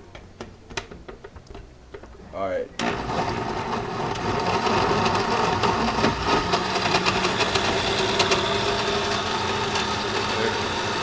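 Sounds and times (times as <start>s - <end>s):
blender running: 2.8s - 11.0s.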